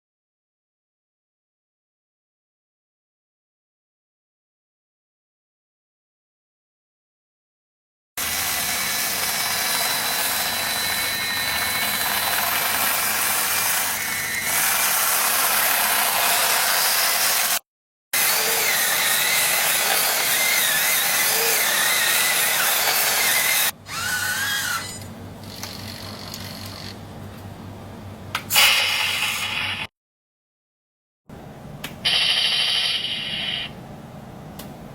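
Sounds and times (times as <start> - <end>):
model tank gear motor whine: 8.2 - 17.6, 18.2 - 27.0.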